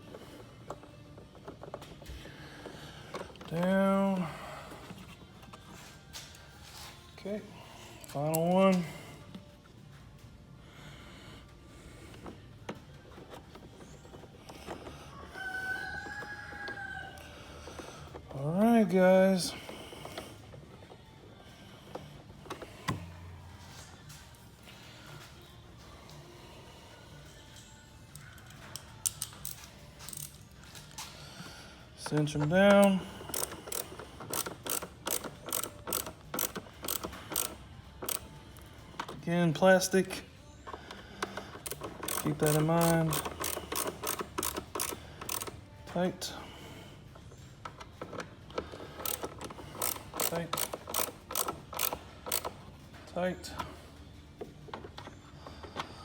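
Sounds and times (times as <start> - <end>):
hand ratchet clicking: 28.1 - 31.0, 32.0 - 39.2, 40.9 - 45.6, 48.0 - 52.6.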